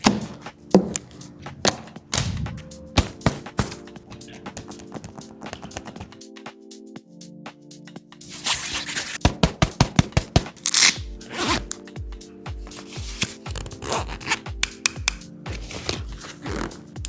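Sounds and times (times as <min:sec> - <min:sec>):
background music with steady beat: 0:00.0 - 0:17.0
fabric rubbing and scraping: 0:08.3 - 0:09.2
zipper rasping: 0:10.8 - 0:11.7, 0:12.9 - 0:14.5, 0:15.6 - 0:16.9.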